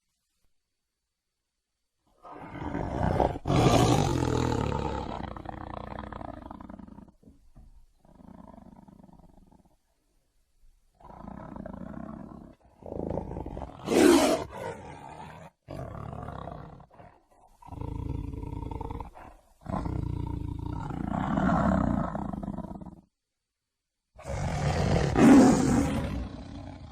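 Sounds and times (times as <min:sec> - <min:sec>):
tiger roaring: 0:02.2 - 0:07.2, 0:11.0 - 0:23.0, 0:24.2 - 0:26.9.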